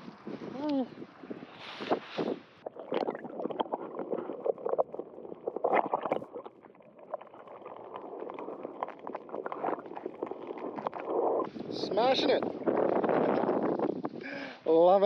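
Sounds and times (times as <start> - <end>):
shallow water splashing: 1.6 - 14.3.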